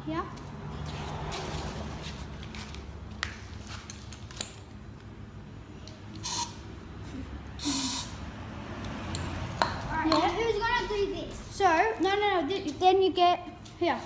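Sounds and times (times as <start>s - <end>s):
spray paint can hissing: 6.2s - 6.6s, 7.6s - 8.2s.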